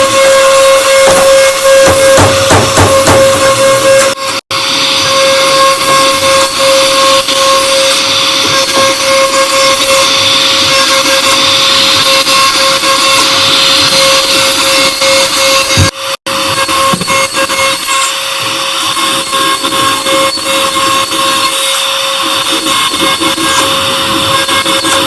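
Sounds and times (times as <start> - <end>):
bit cutting into board: 0.0 - 4.4
router spindle high whine: 0.0 - 25.0.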